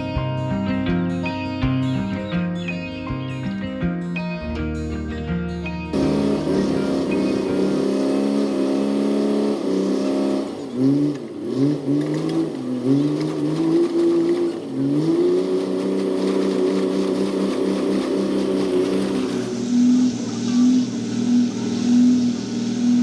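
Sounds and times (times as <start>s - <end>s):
engine running: 0.0s - 23.0s.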